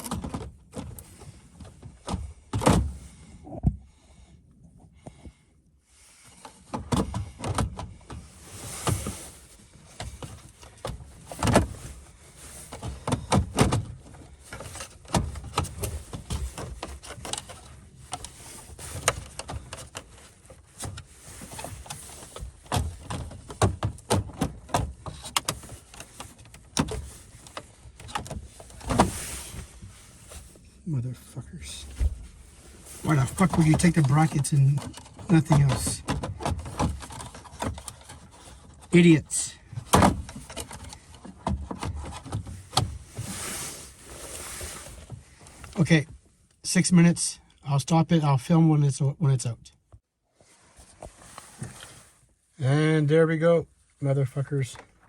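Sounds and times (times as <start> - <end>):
tools clicking and scraping on car radio: 6.4 - 30.6, 31.6 - 46.0.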